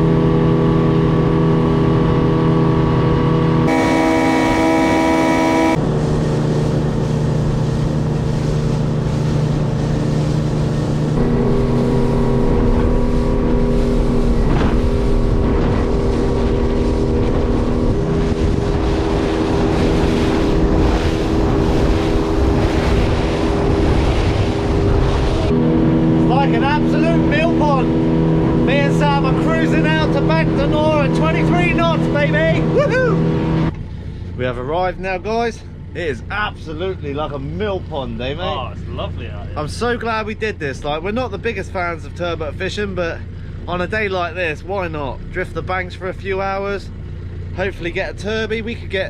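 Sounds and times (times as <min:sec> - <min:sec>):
water against hull: 0:00.0 - 0:34.4
boat engine running: 0:00.0 - 0:49.0.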